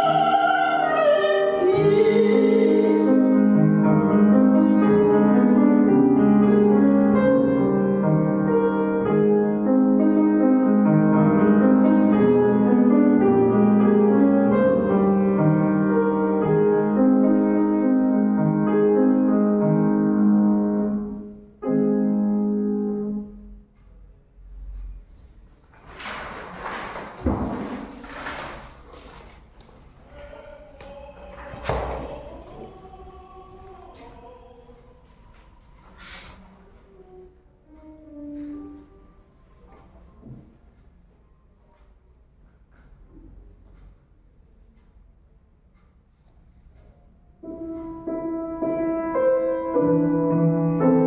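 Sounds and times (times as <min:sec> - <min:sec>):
piano playing repeated chords: 0:00.0 - 0:23.8, 0:36.9 - 0:39.3, 0:47.4 - 0:51.0.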